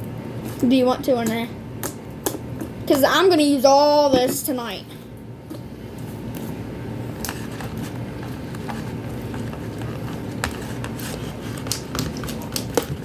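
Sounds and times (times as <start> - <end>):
slime stirred in a bowl: 5.5 - 13.0.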